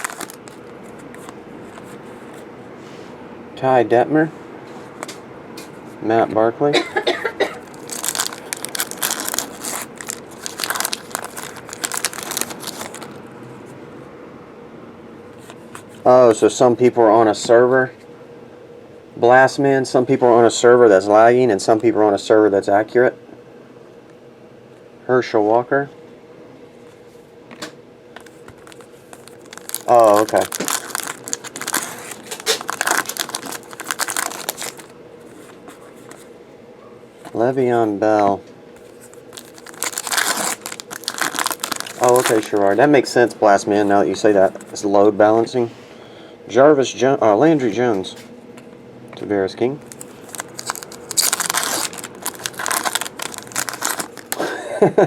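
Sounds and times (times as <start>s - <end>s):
foil wrappers crinkling and tearing: 0.0s - 1.4s, 7.6s - 13.2s, 28.2s - 34.9s, 38.8s - 42.8s, 49.8s - 54.8s.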